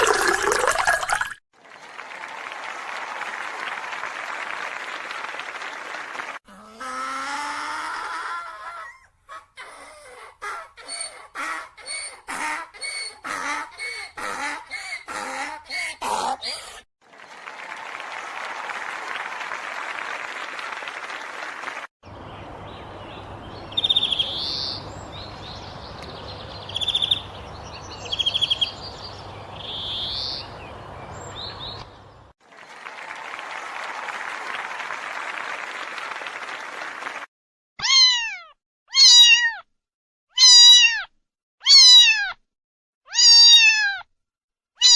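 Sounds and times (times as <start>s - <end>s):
cat meowing: 37.8s - 39.6s, 40.4s - 42.4s, 43.1s - 44.0s.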